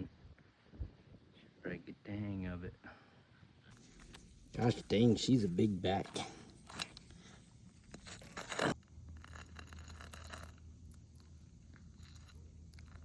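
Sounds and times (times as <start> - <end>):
faint low hum: 0.0 - 13.0
scraping and rustling: 3.7 - 13.0.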